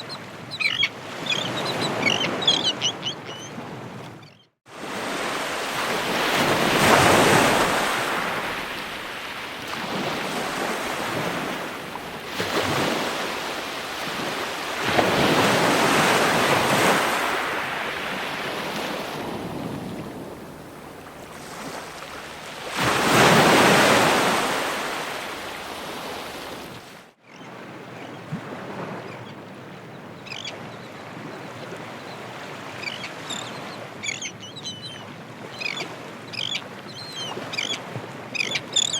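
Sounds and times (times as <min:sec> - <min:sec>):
ocean waves breaking on shore: 0:00.0 - 0:38.9
soft wash of surf: 0:03.6 - 0:34.2.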